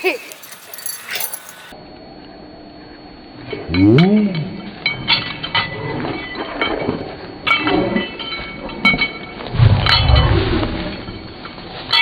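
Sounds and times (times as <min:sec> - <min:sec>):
metallic clinking and rattling: 0:00.0 - 0:01.7.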